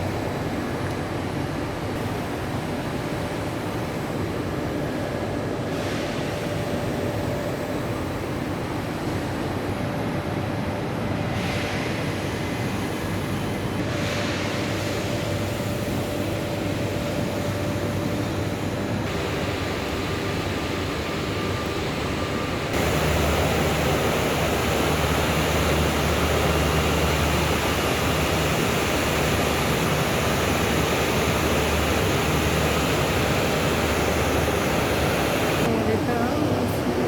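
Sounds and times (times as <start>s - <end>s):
rainwater rushing through drain: 22.8s - 35.7s.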